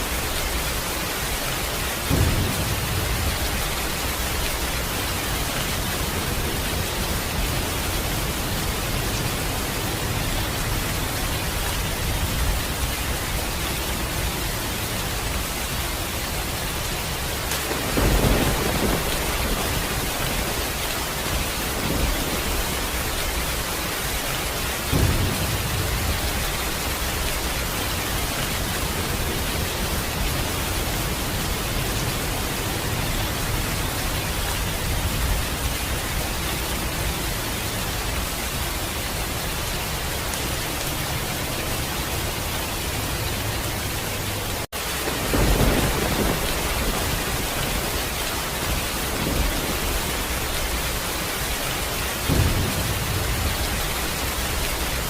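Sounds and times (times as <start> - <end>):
heavy rain: 0.0 - 55.0
rolls of thunder: 17.6 - 23.2, 45.1 - 47.9.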